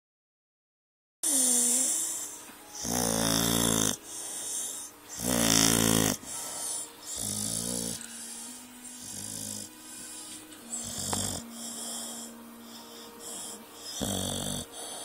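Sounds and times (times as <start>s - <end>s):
dog snoring: 1.2s - 15.0s.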